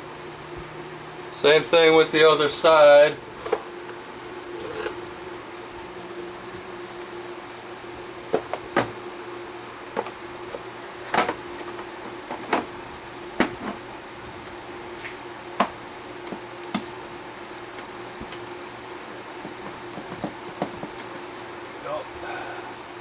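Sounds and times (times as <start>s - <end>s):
faint hum: 0.0s - 23.0s.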